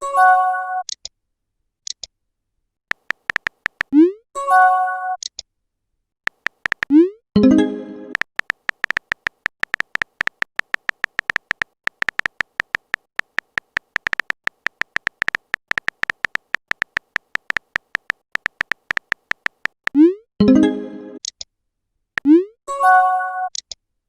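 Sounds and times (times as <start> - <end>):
electronic tapping clicks with beeps: 2.9 - 4.1, 6.3 - 7.1, 8.1 - 20.2.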